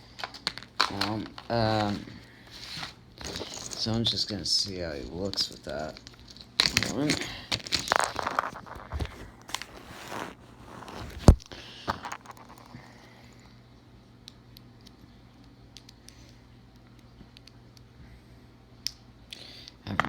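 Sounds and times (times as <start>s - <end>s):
plastic parts rustling and clicking: 0.0s - 12.9s.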